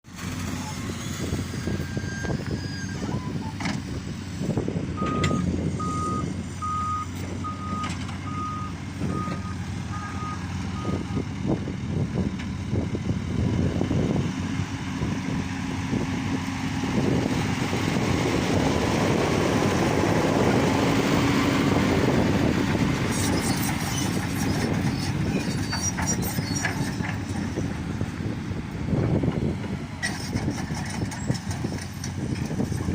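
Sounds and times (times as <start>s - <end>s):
construction machine engine running: 0.1s - 32.9s
reversing alarm beeps: 5.0s - 11.0s.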